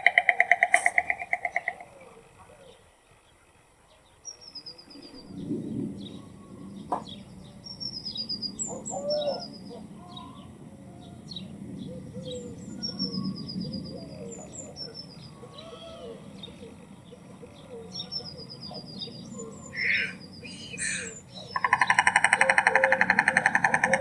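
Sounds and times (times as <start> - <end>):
songbird trilling: 0.0 - 2.0, 6.0 - 24.0
storks clattering bills: 20.6 - 24.0.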